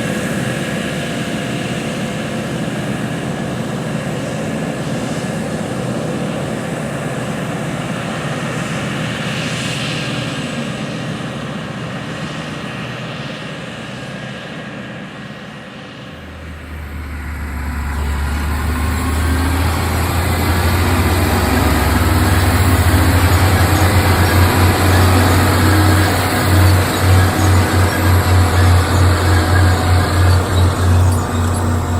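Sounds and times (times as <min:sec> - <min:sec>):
deep engine drone: 0:16.0 - 0:31.9.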